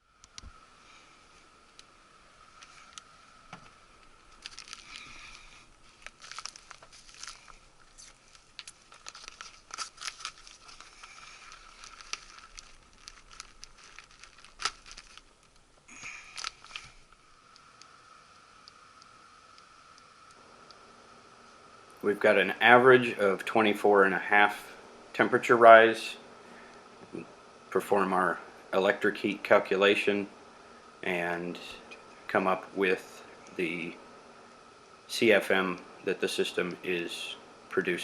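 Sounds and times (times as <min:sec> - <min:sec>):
crinkling and clicking handling: 0:02.6 - 0:17.9
high-pitched hum: 0:15.7 - 0:38.0.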